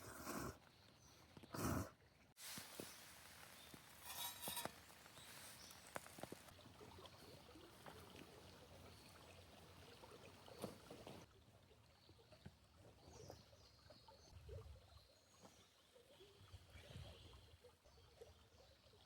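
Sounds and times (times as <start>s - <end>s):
faint outdoor hiss: 0.0s - 14.3s
brief rustle: 2.4s - 6.5s.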